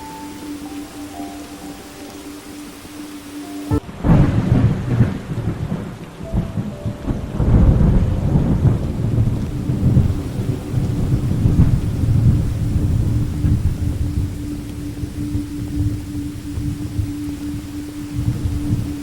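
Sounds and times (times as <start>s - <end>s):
steady rain: 0.0s - 19.0s
thunder rumbling: 0.0s - 19.0s
loud thunderclap: 3.7s - 17.2s.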